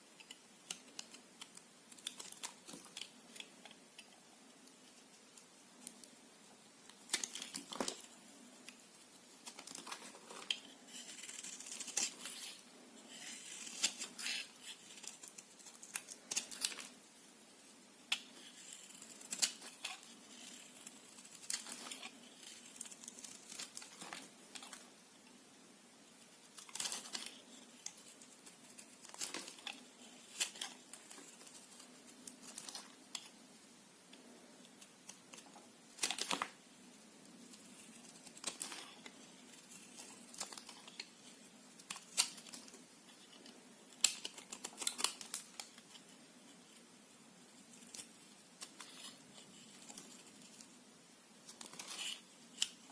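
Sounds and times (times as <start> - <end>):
knife cutting soap: 9.5 - 16.9.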